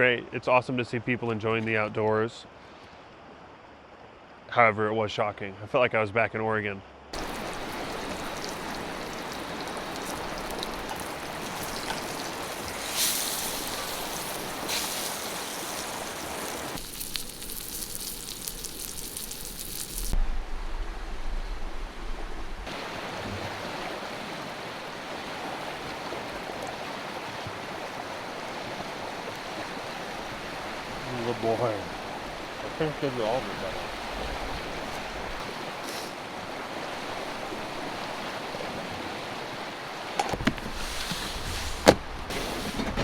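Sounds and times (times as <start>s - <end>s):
fast-flowing river rushing: 7.2s - 16.8s.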